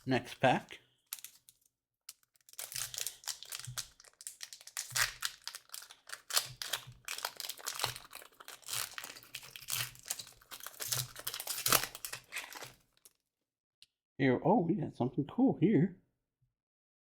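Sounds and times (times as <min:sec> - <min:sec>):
foil wrapper crinkling: 0:00.0 - 0:13.1.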